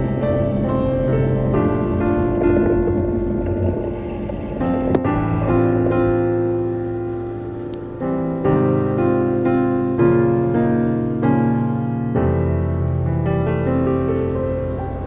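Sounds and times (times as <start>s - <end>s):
piano playing sustained chords: 0.0s - 15.0s.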